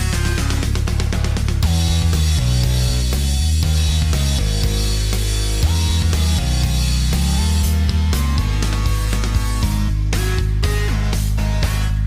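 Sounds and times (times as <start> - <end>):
drum kit beating: 0.0 - 12.0
rock music: 0.0 - 12.0.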